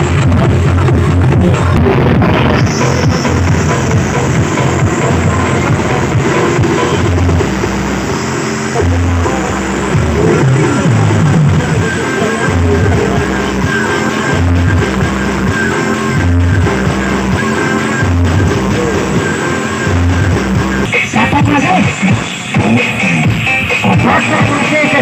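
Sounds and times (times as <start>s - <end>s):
deep bass notes: 0.0s - 25.0s
loud music from loudspeakers: 0.0s - 25.0s
person singing: 8.7s - 14.5s, 18.4s - 19.6s.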